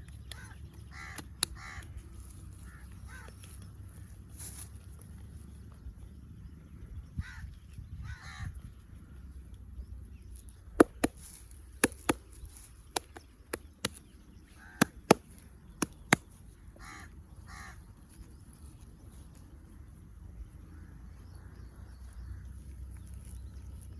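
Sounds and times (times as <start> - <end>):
crow cawing: 0.4 - 1.9, 2.6 - 3.4, 7.2 - 8.5, 14.6 - 15.0, 16.8 - 17.8
sharp slaps or claps: 12.9 - 14.0.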